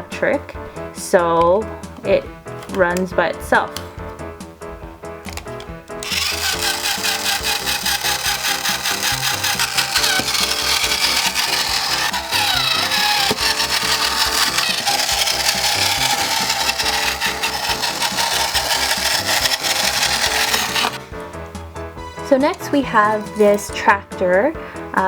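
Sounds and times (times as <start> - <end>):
toy electric motor buzzing: 6.0 - 21.2, 22.3 - 23.9.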